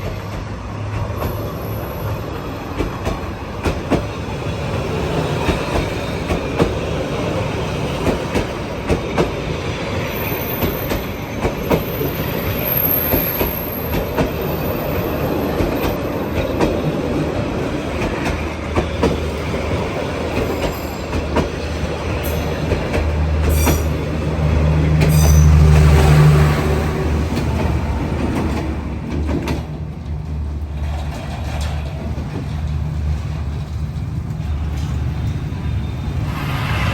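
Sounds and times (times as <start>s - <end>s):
diesel locomotive engine drone: 0.0s - 36.9s
train wheels clicking on rails: 0.0s - 36.9s
high wheel squeal: 10.1s - 16.2s, 23.4s - 24.1s, 25.0s - 25.9s, 34.5s - 36.9s.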